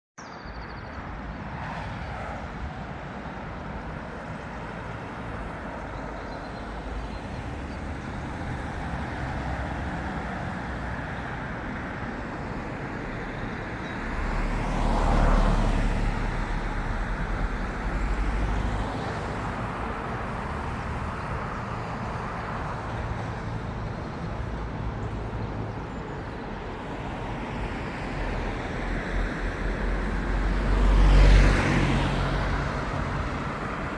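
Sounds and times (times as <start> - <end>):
cars going by: 0.8 - 33.9
vehicle passing close: 23.5 - 33.9.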